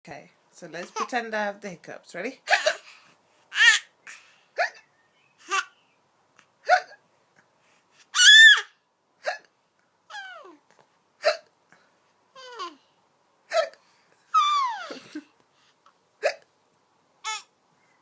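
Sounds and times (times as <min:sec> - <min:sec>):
woman's pretend hiccups: 0:16.2 - 0:16.5.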